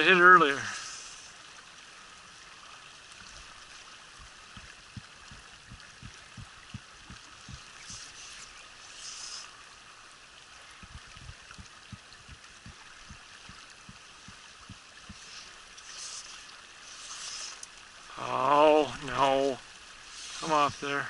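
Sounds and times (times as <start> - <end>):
stream running: 0.0 - 21.0
short hissing bursts: 0.5 - 1.4, 7.4 - 9.6, 15.0 - 21.0
soft low thumps: 4.2 - 7.8, 10.8 - 15.2.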